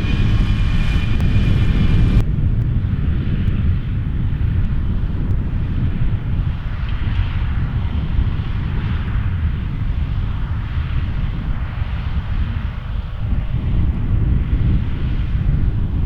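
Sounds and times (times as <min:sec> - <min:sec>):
tractor and baler drone: 0:00.0 - 0:02.2
heavy uneven low rumble: 0:00.0 - 0:03.0.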